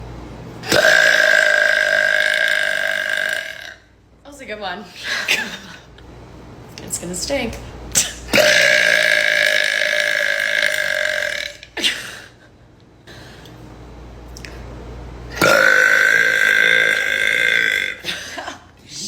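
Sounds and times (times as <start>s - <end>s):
woman belching: 0.6s - 3.9s, 8.0s - 11.9s, 15.3s - 18.6s.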